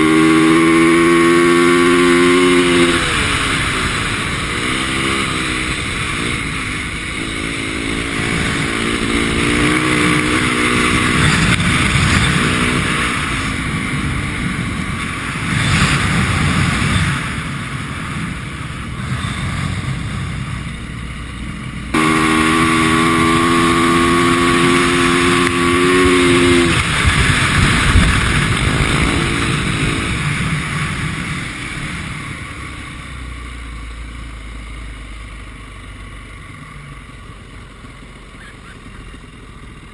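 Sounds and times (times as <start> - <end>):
dirt bike engine revving: 0.0 - 20.6, 21.9 - 32.7
louder steady engine note: 0.0 - 39.9.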